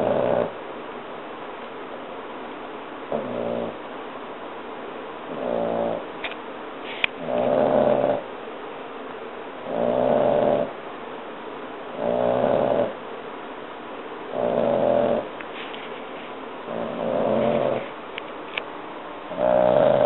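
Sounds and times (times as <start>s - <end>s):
puppy snoring: 0.0s - 0.6s, 3.1s - 3.9s, 5.2s - 8.3s, 9.6s - 10.8s, 11.9s - 13.0s, 14.3s - 18.0s, 19.3s - 20.0s.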